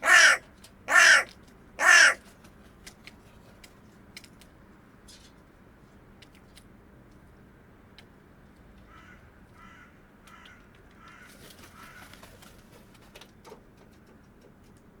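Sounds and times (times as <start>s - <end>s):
crow cawing: 0.0s - 2.2s, 8.9s - 11.9s.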